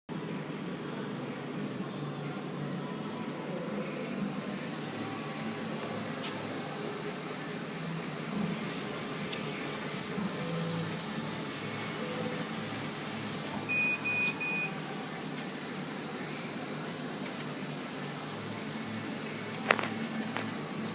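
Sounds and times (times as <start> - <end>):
laser cutting machine humming: 0.2 - 20.9
short electronic beeps: 13.6 - 14.8.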